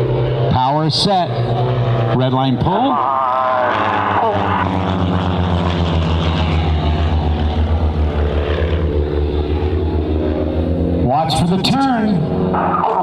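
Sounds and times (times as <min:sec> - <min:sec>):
propeller plane engines droning: 0:00.0 - 0:13.0.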